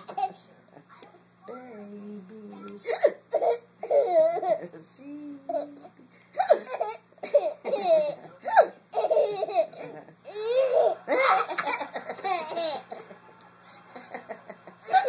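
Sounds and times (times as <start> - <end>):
baby laughing: 0.0 - 0.5, 2.8 - 4.7, 5.5 - 13.2, 14.1 - 15.0.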